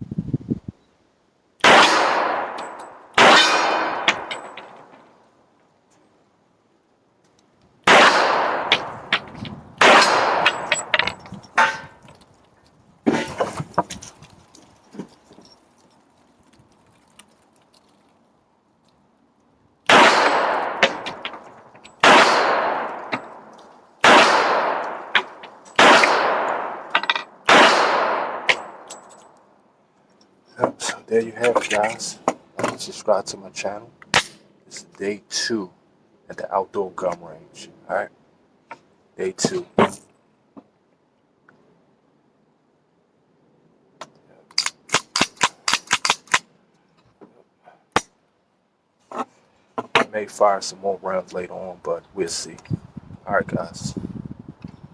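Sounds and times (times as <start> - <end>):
pistol shots: 1.6 - 4.8, 7.8 - 10.9, 19.9 - 21.4, 22.0 - 28.8.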